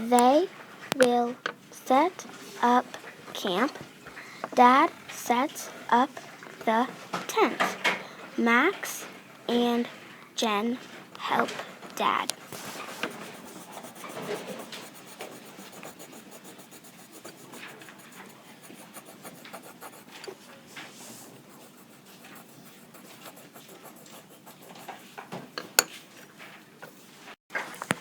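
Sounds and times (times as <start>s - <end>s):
faint rubbing and scratching: 8.4s - 25.4s.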